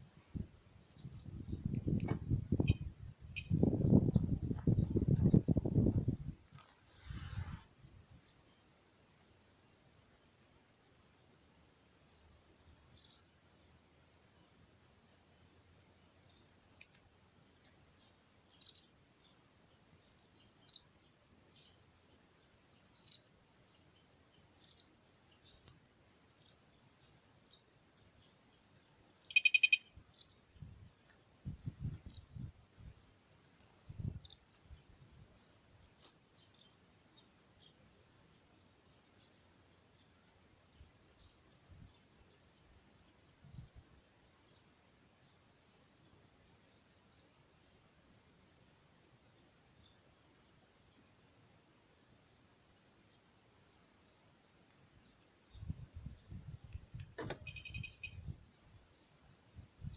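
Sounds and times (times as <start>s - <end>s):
small birds chirping: 0.4s - 59.9s
low thumps: 1.8s - 2.7s
pulsing high-pitched beep: 57.4s - 58.2s.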